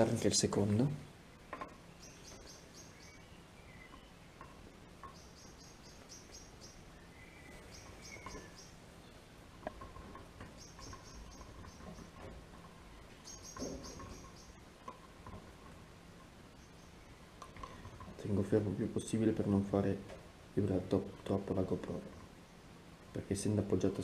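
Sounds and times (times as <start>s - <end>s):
faint high-pitched chirping: 1.3s - 9.4s, 10.4s - 14.7s, 16.5s - 19.5s.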